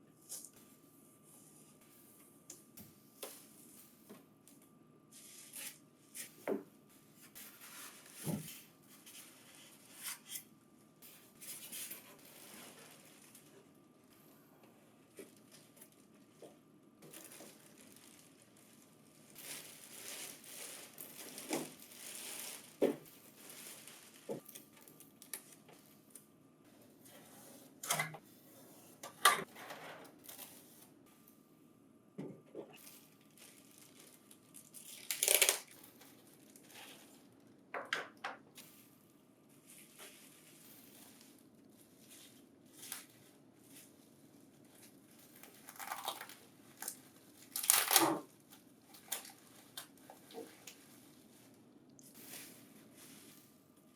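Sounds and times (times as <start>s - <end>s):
plastic and tape crinkling and tearing: 11.1s - 13.8s, 15.0s - 26.3s, 32.7s - 37.5s, 39.5s - 53.6s.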